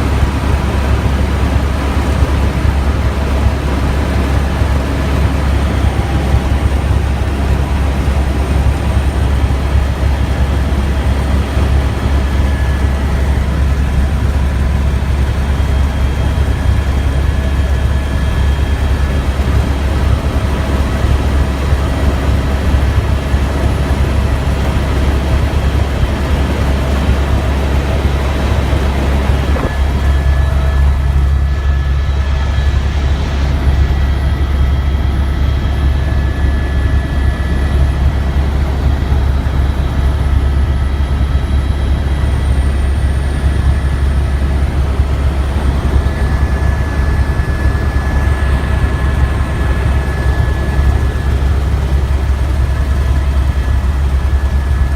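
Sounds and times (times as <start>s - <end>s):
helicopter rotor drone: 0.0s - 54.9s.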